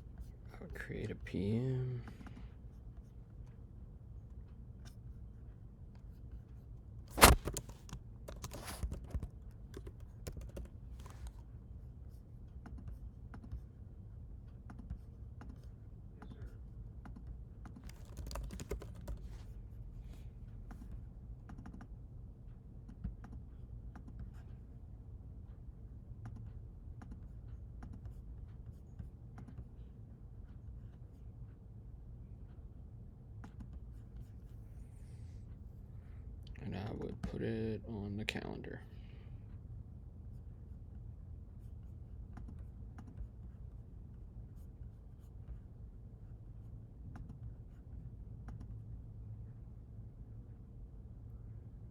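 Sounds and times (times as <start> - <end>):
typing on computer keyboard: 7.1 - 11.4, 17.1 - 19.5.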